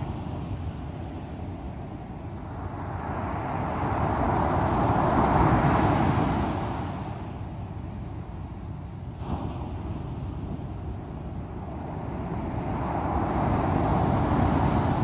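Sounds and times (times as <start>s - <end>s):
sea waves breaking: 9.1s - 15.0s.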